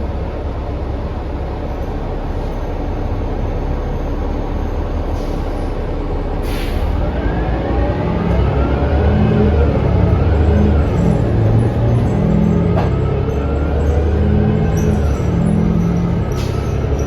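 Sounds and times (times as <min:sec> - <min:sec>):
bus engine low rumble: 0:00.0 - 0:17.0
short air hisses: 0:06.4 - 0:07.0.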